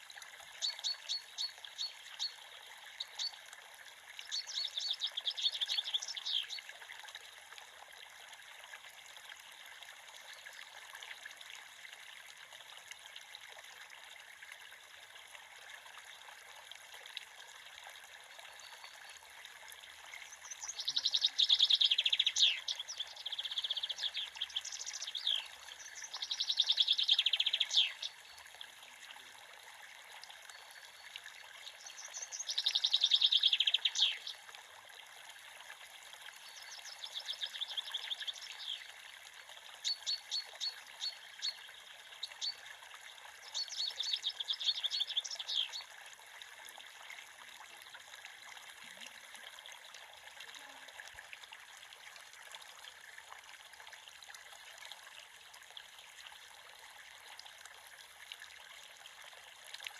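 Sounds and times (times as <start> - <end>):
creek water running: 0.0 - 59.9
birds singing: 0.6 - 2.4, 4.3 - 6.6, 20.3 - 28.4, 31.7 - 34.4, 36.4 - 38.9, 39.8 - 42.6, 43.5 - 45.8.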